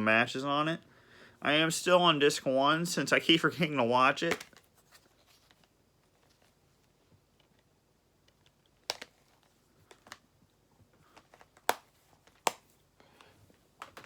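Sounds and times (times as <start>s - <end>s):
plastic case clicks and taps: 8.8s - 9.1s, 11.2s - 12.7s.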